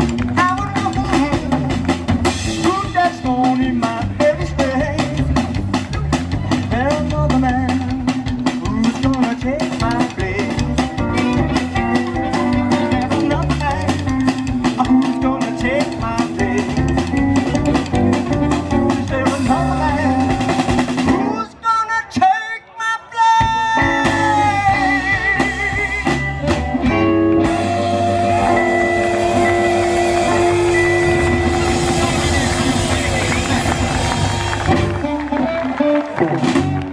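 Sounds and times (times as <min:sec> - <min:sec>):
band playing: 0:00.0 - 0:22.3, 0:23.2 - 0:36.9
sliding guitar notes: 0:10.2 - 0:21.4, 0:23.8 - 0:36.9.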